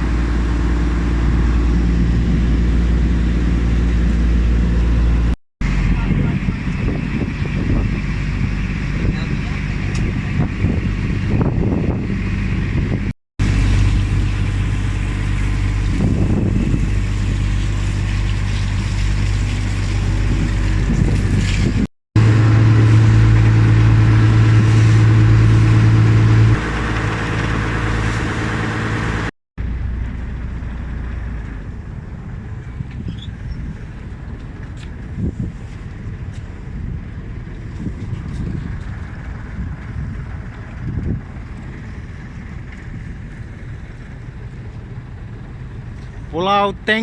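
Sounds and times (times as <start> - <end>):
boat engine humming: 0.0 - 47.0.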